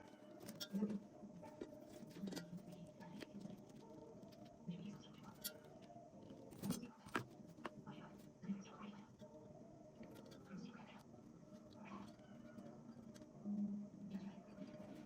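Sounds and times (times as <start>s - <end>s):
faint clicks and taps: 0.0s - 8.3s.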